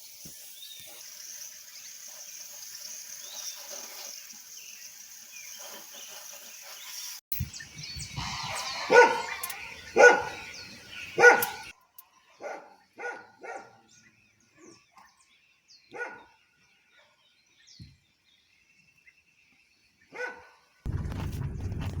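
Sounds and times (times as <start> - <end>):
faint birds chirping: 0.4 - 20.8
dog barking: 8.2 - 11.7, 12.4 - 13.9, 15.9 - 16.4, 20.1 - 20.7.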